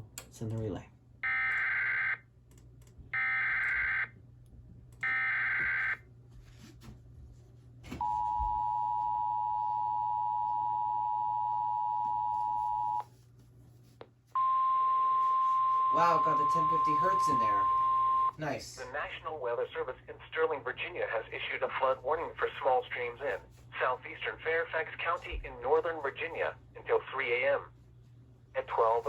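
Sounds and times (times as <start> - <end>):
two-tone attention signal: 14.4 - 18.4
weather radio alert tone: 14.4 - 18.4.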